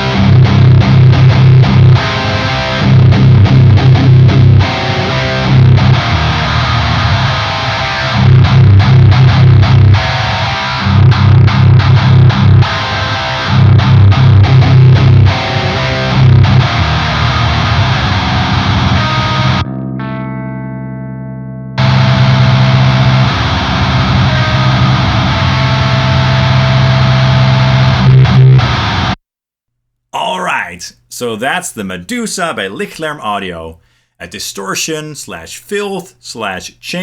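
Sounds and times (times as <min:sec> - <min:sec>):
distorted electric guitar metal riff: 0:00.0 - 0:29.2.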